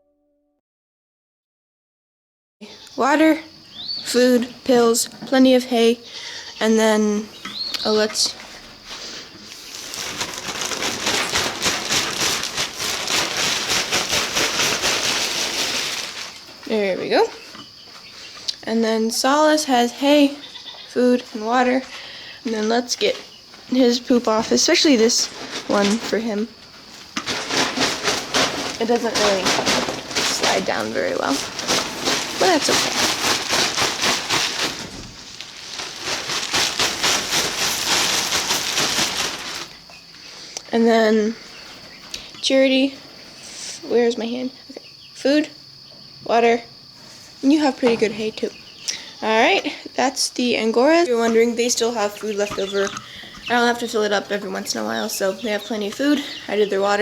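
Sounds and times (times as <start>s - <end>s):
dry feed crackling rustle: 2.8s - 44.4s, 46.9s - 57.0s
rapid scraping strokes: 26.9s - 39.8s.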